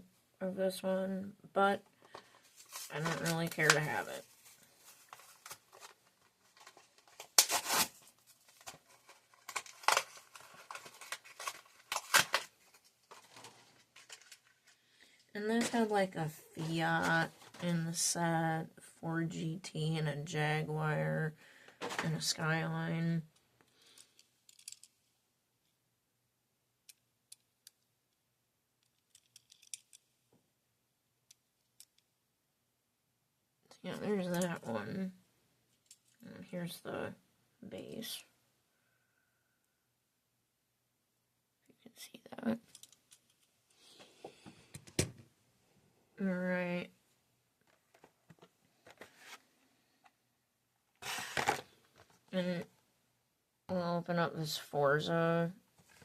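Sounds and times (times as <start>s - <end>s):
packaging rustling: 2.0s - 14.8s, 51.0s - 52.2s
packaging tearing: 5.1s - 14.5s.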